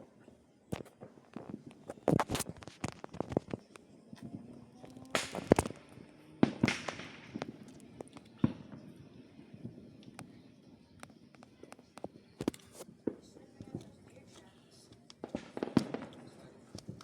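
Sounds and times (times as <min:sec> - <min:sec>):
distant fireworks bangs and pops: 0:00.7 - 0:10.4, 0:15.2 - 0:17.0.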